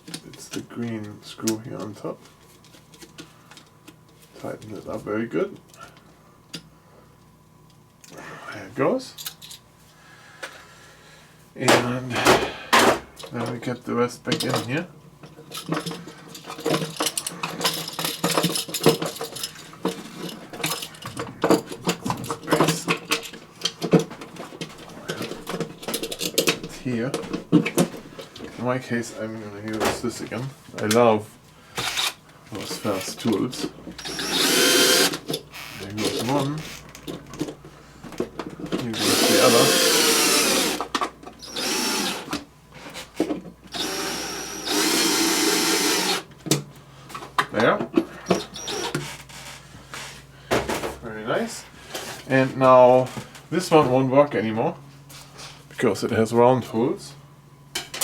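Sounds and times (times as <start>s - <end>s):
cordless drill running: 31.8s - 32.2s, 34.0s - 36.8s, 39.0s - 42.4s, 43.7s - 46.3s, 48.4s - 49.0s.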